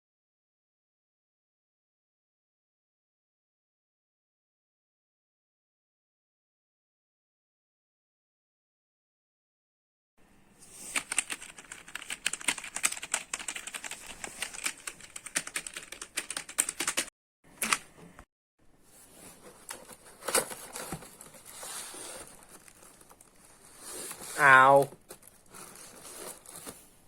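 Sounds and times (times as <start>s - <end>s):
fast keyboard typing: 10.9s - 17.8s
handling noise: 19.0s - 27.0s.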